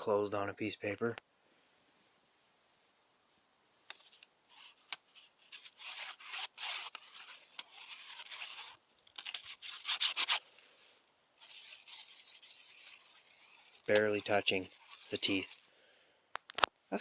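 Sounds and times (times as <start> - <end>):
paper rustling and scraping: 3.9 - 10.5, 11.4 - 15.7.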